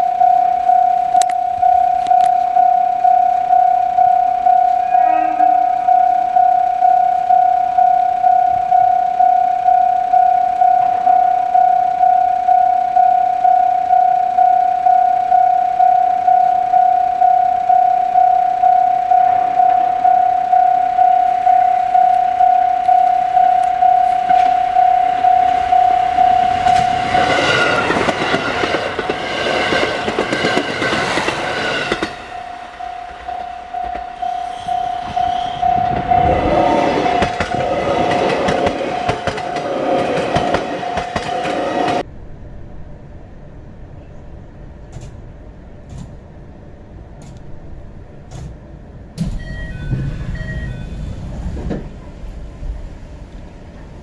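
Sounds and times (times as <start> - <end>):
level crossing alarm ringing: 0.0 - 42.0, 49.2 - 51.2
train horn: 4.3 - 8.7, 18.0 - 39.4
train wheels clattering over rails: 25.5 - 42.0.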